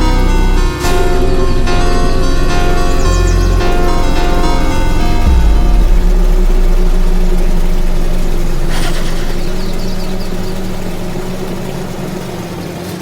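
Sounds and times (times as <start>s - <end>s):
truck engine droning: 0.0s - 13.0s
hissing rush: 3.3s - 12.8s.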